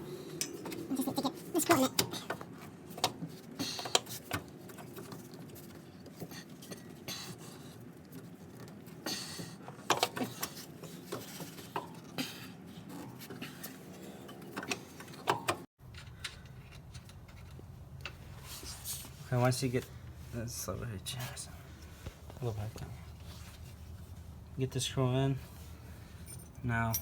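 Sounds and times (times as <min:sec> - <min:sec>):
low steady background noise: 0:00.0 - 0:27.0.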